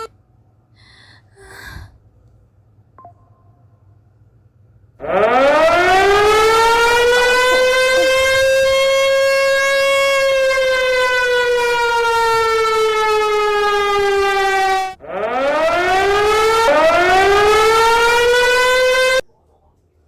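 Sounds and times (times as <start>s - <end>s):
siren wailing: 5.0s - 19.2s.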